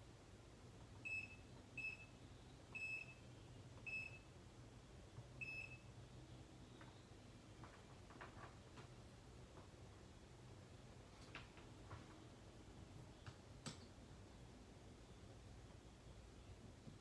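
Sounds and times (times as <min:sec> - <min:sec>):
test meter beeping: 0:01.0 - 0:04.3, 0:05.4 - 0:05.9.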